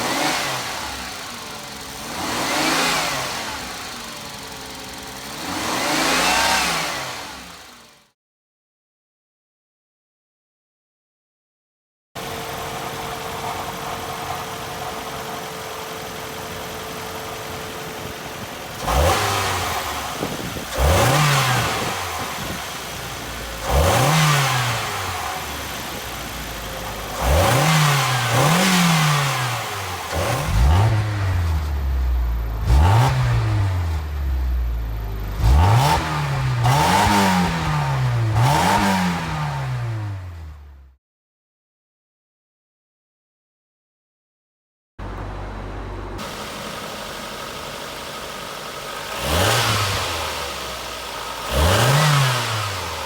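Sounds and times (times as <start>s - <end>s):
car engine revving: 0.0s - 7.9s, 16.2s - 40.8s, 45.0s - 53.0s.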